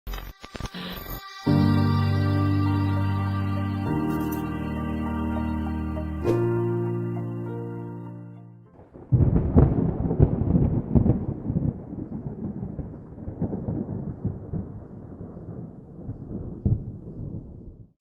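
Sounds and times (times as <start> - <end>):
held musical chord: 1.4 - 8.8
thunder clap and rumble: 8.8 - 18.0.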